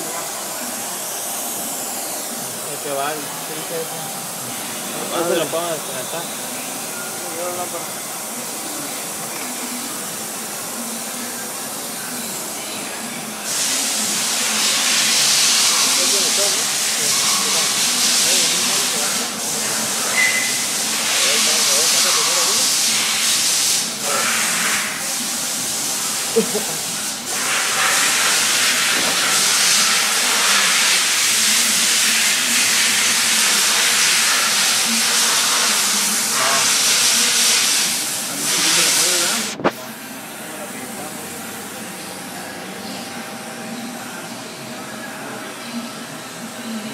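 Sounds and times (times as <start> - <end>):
steady background noise: 0.0 - 46.9
loud even hiss: 13.4 - 39.8.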